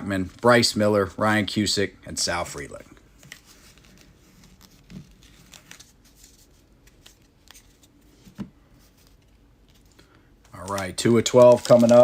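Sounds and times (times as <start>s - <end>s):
foil wrappers crinkling: 8.9s - 12.0s
cards ticking while sorted: 9.7s - 12.0s.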